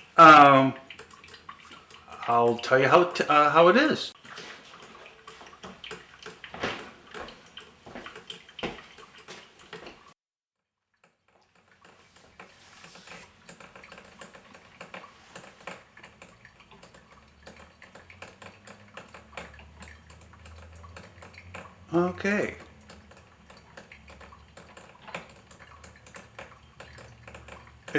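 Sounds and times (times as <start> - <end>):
coffee maker sputtering and dripping: 0.0 - 10.2, 10.9 - 27.9.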